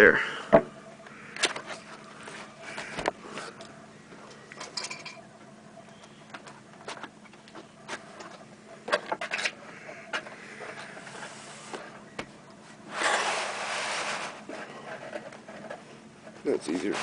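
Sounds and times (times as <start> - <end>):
loud scraping rush: 12.9 - 15.0.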